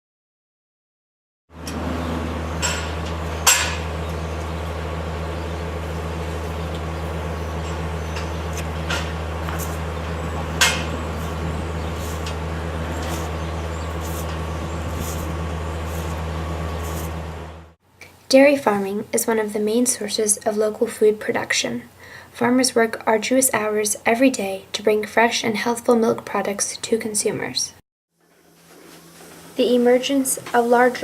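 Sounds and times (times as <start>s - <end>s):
low machine hum: 1.6s - 17.8s
metallic clanks and clinks: 2.6s - 3.9s.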